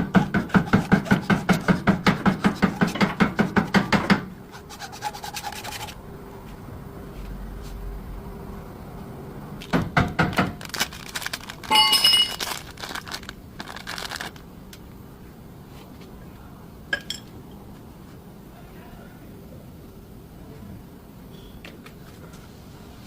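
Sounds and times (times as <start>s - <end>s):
metal tools clanking: 11.6s - 12.4s
loud ringing metallic clink: 11.7s - 12.4s.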